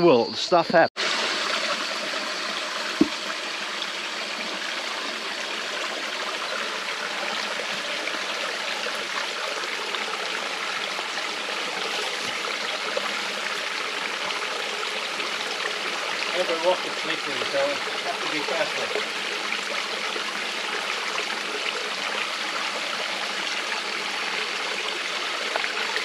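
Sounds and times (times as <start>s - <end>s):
stream flowing over rocks: 1.0s - 26.0s
sharp tap: 3.0s - 3.2s.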